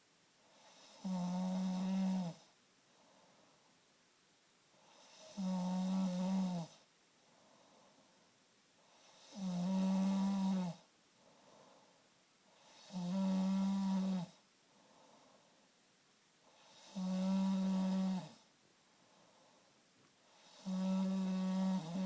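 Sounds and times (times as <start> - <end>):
man snoring: 0.5 - 2.4, 4.9 - 6.8, 9.0 - 10.8, 12.6 - 14.3, 16.6 - 18.4, 20.3 - 22.0.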